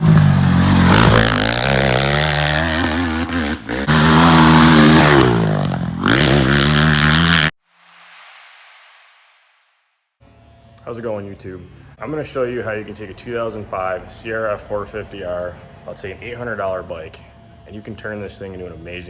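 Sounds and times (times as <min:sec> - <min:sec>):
engine revving: 0:00.0 - 0:07.5
faint hiss: 0:07.6 - 0:09.7.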